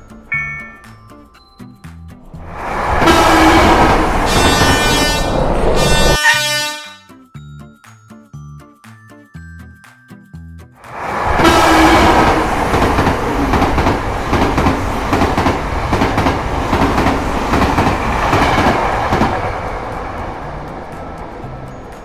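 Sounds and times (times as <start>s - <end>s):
train rumble: 2.2s - 6.2s, 10.9s - 22.0s
wheels clacking over rail joints: 2.5s - 6.2s, 10.9s - 22.0s.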